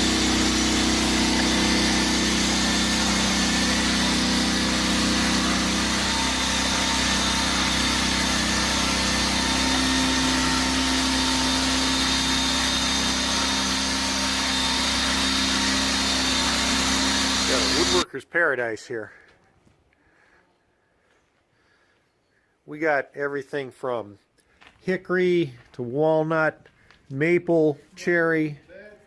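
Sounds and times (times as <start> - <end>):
sawmill mechanical drone: 0.0 - 18.1.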